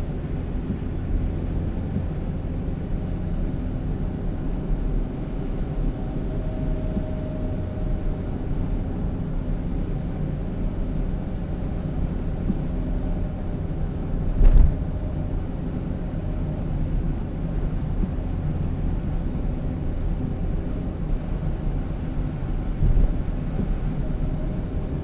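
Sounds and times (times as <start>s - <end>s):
car cabin road and engine rumble: 0.0s - 25.0s
brief thump: 14.4s - 14.8s.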